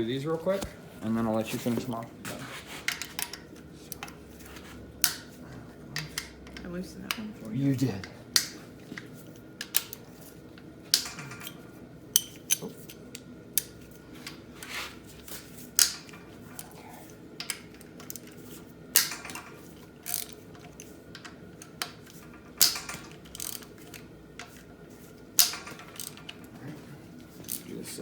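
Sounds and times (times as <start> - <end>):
bolts cracking loose: 5.0 - 5.4, 6.0 - 14.4, 15.2 - 16.8, 17.4 - 24.7, 25.3 - 26.5
ratchet clicking: 19.0 - 24.7, 25.4 - 26.4
metal tools clinking: 19.1 - 24.6, 25.4 - 26.5, 27.3 - 27.8.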